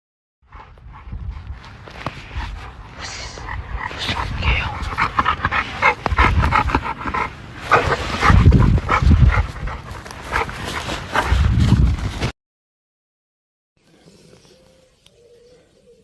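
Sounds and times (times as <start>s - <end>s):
dog panting rapidly: 0.5s - 11.5s.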